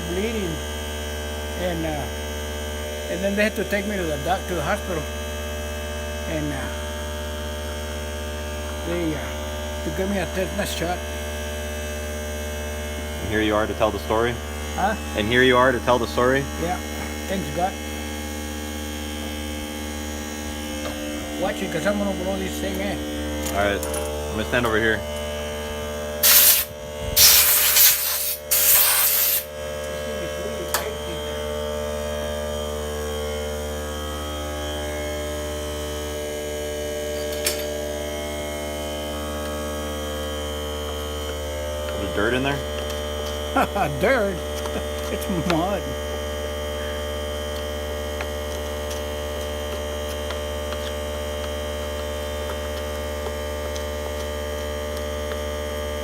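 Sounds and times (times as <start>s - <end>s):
low electrical hum: 0.0s - 56.0s
compressed air hissing blasts: 26.2s - 29.5s.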